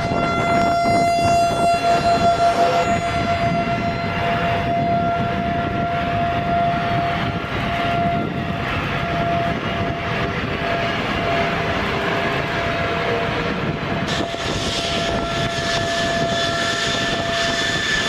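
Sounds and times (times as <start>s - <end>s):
high engine whine: 0.0s - 18.0s
jet engines roaring: 0.0s - 18.0s.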